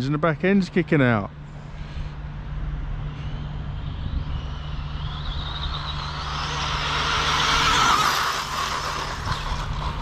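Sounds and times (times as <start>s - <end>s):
rushing noise: 1.6s - 10.0s
rc car electric motor whining: 2.9s - 10.0s.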